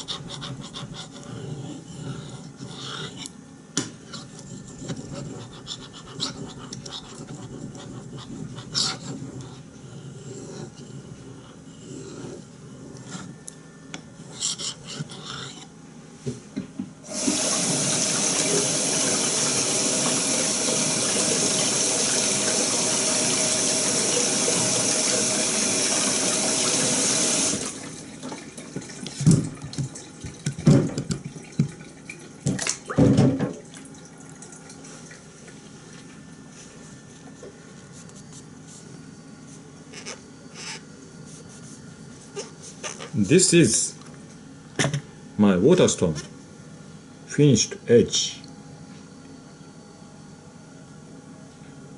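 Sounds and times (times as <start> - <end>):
water running from a tap: 17.1 - 32.6.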